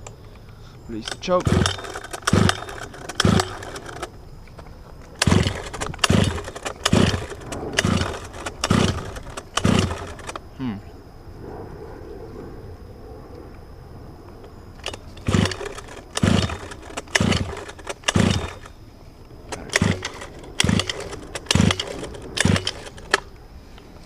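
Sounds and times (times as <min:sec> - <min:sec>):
engine pull-start: 0:01.0 - 0:04.1, 0:05.1 - 0:10.4, 0:14.8 - 0:18.8, 0:19.5 - 0:23.3.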